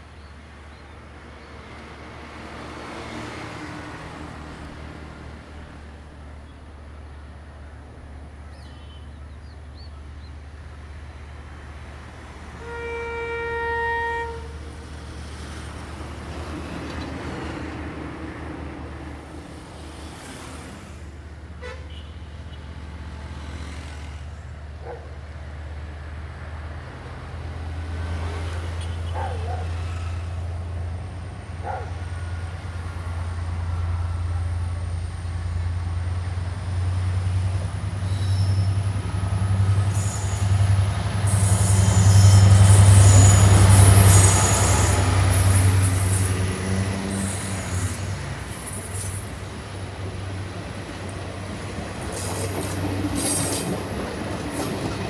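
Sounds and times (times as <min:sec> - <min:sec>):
diesel train engine drone: 0:00.0 - 0:55.0
train horn blast: 0:12.5 - 0:14.8, 0:21.6 - 0:22.7.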